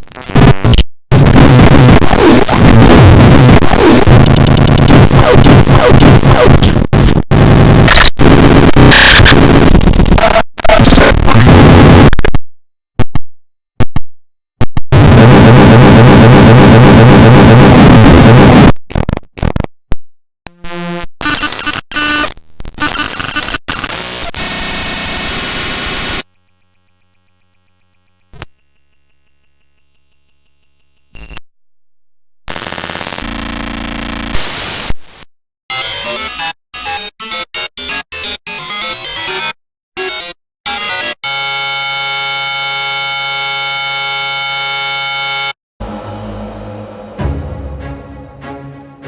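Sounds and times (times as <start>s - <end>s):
choppy cut-up fragments: 0.4s - 8.7s, 14.9s - 19.6s
stuttering digital noise bursts: 0.4s - 12.1s, 15.0s - 18.7s
loud harsh buzz: 15.0s - 18.6s, 45.8s - 49.0s
high steady tones: 45.8s - 49.0s
quieter swelling tones: 45.8s - 49.0s.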